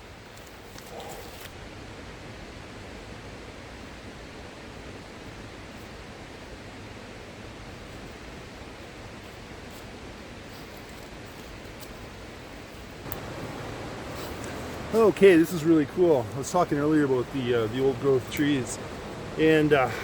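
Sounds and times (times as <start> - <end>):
steady rushing noise: 1.7 - 20.0
faint light ticks: 13.1 - 13.4.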